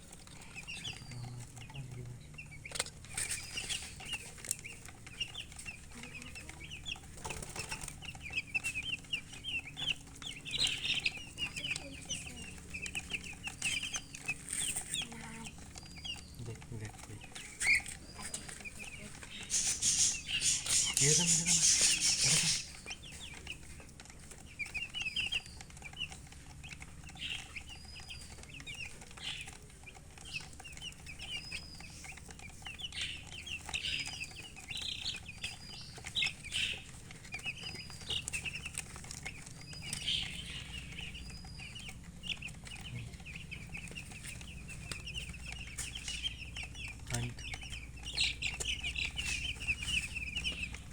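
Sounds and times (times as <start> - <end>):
baby chicks peeping: 0.0 - 50.9.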